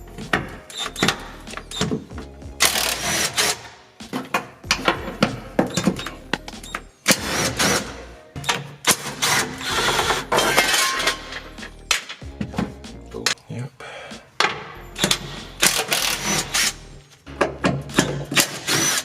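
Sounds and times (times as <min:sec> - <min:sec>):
metal scraping and rasping: 0:04.7 - 0:11.6.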